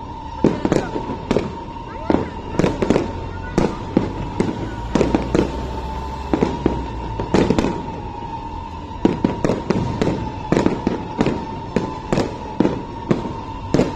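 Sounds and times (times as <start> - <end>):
fireworks bangs with echo: 0.0 - 13.9.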